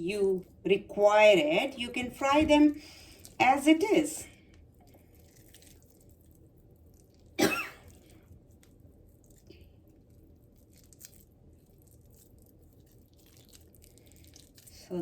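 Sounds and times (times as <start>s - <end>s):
person coughing: 7.4s - 7.9s.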